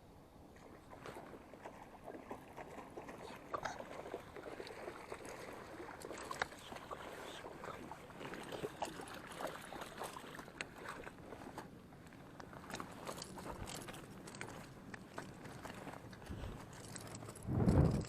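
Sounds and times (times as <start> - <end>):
rustling and scraping: 12.5 - 18.0.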